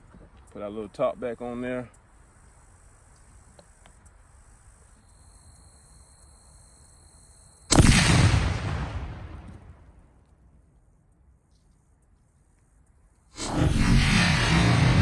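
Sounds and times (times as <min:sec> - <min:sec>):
loud explosion: 0:07.7 - 0:09.6, 0:13.4 - 0:15.0.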